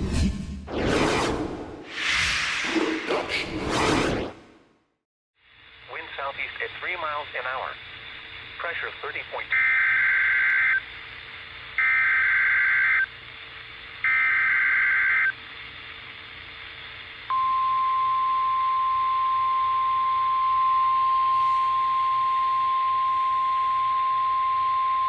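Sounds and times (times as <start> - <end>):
radio hiss: 5.5 - 11.4
steady warning alarm tone: 9.5 - 10.9, 11.8 - 13.1, 14.0 - 15.4, 17.3 - 25.0.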